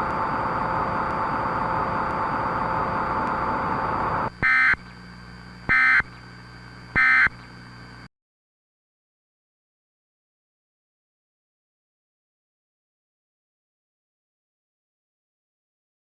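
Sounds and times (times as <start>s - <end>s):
data tone bursts: 0.0s - 4.9s, 5.7s - 6.1s, 7.0s - 7.4s
static hiss: 0.0s - 8.1s.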